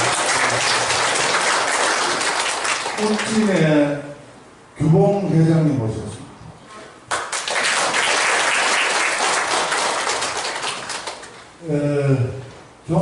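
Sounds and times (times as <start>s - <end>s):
audience clapping: 0.0s - 3.7s, 7.1s - 11.5s.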